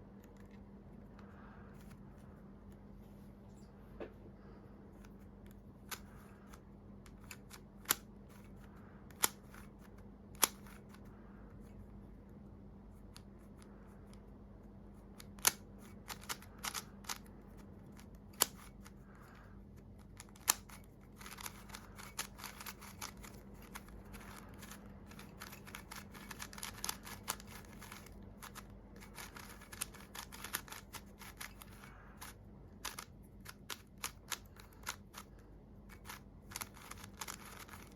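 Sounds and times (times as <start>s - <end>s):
puzzle cube clicking turns: 5.5s - 11.1s, 15.1s - 37.9s.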